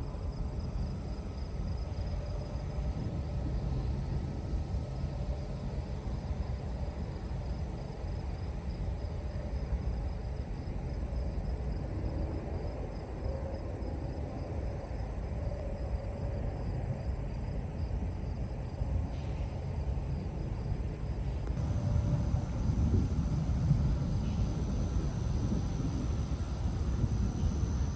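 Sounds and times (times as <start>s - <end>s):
crickets chirping: 12.8s - 27.9s
steady low rumble: 21.3s - 27.9s.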